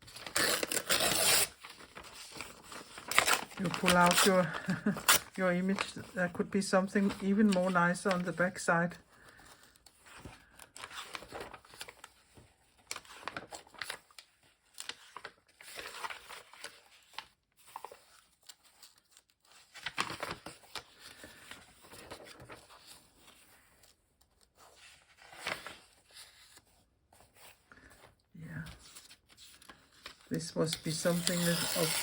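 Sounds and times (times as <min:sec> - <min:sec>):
catalog pages rustling and tearing: 0:00.0 - 0:32.0.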